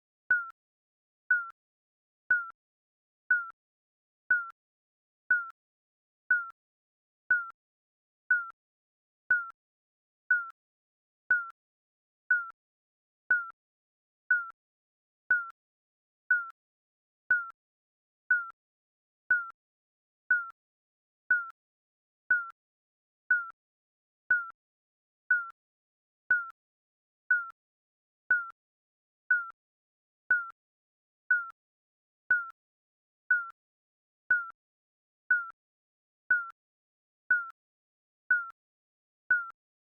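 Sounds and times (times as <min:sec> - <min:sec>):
timer beeping: 0:00.3 - 0:00.5, 0:01.3 - 0:01.5, 0:02.3 - 0:02.6, 0:03.3 - 0:03.6, 0:04.3 - 0:04.6, 0:05.3 - 0:05.6, 0:06.3 - 0:06.6, 0:07.3 - 0:07.6, 0:08.3 - 0:08.6, 0:09.3 - 0:09.6, 0:10.3 - 0:10.5, 0:11.3 - 0:11.6, 0:12.3 - 0:12.5, 0:13.3 - 0:13.5, 0:14.3 - 0:14.5, 0:15.3 - 0:15.5, 0:16.3 - 0:16.5, 0:17.3 - 0:17.5, 0:18.3 - 0:18.5, 0:19.3 - 0:19.5, 0:20.3 - 0:20.6, 0:21.3 - 0:21.5, 0:22.3 - 0:22.5, 0:23.3 - 0:23.6, 0:24.3 - 0:24.5, 0:25.3 - 0:25.5, 0:26.3 - 0:26.5, 0:27.3 - 0:27.5, 0:28.3 - 0:28.5, 0:29.3 - 0:29.6, 0:30.3 - 0:30.6, 0:31.3 - 0:31.6, 0:32.3 - 0:32.6, 0:33.3 - 0:33.6, 0:34.3 - 0:34.6, 0:35.3 - 0:35.6, 0:36.3 - 0:36.6, 0:37.3 - 0:37.6, 0:38.3 - 0:38.6, 0:39.3 - 0:39.5.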